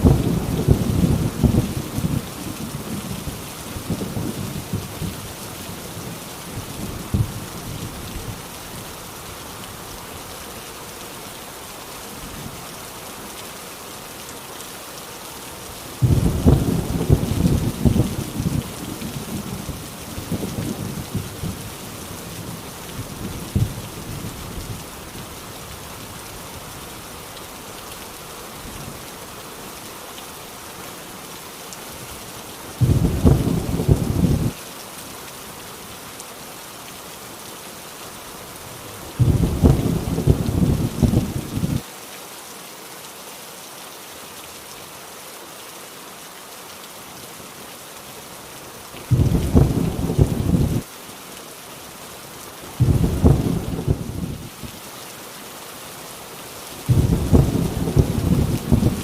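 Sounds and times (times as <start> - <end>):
thunder rumbling: 0.0 - 5.3, 16.0 - 21.7, 32.8 - 34.6, 39.2 - 41.8, 49.1 - 50.8, 52.8 - 54.5, 56.9 - 59.0
heavy rain: 0.0 - 59.0.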